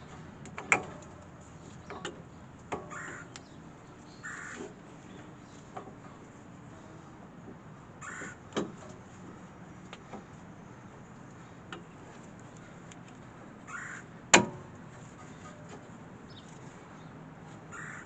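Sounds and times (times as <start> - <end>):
light clicks and knocks of work: 0.0 - 3.6, 4.5 - 6.3, 8.2 - 13.3, 14.3 - 16.8
crow cawing: 2.9 - 3.3, 4.2 - 4.6, 8.0 - 8.4, 13.7 - 14.1, 17.7 - 18.0.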